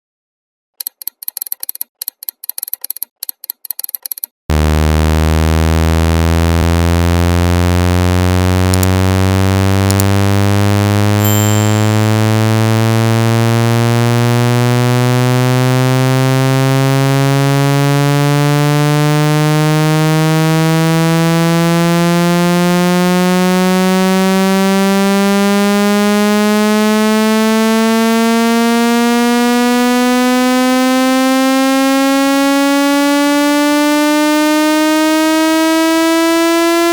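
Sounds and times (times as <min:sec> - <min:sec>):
buzzy tone sweeping upward: 0:11.2 - 0:13.2.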